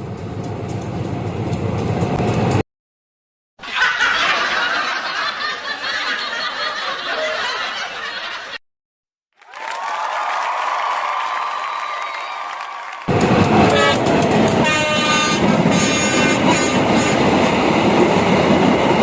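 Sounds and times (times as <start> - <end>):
train rumbling past: 0.0 - 2.6, 13.1 - 19.0.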